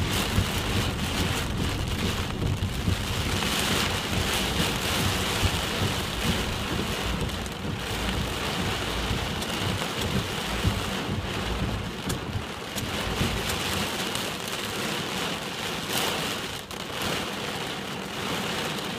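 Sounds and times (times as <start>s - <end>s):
low rumble: 0.0s - 13.8s
heavy rain falling: 0.0s - 18.9s.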